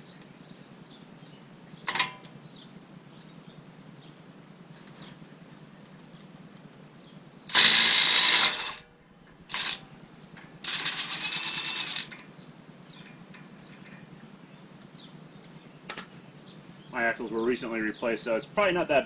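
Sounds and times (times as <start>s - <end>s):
impact wrench hammering: 7.5s - 8.8s, 9.5s - 9.8s, 10.6s - 12.1s.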